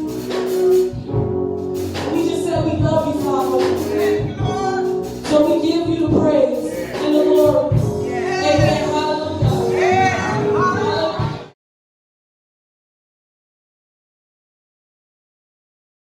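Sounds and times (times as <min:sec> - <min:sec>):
band with low beat: 0:00.0 - 0:11.5
voices singing gospel: 0:02.1 - 0:11.6.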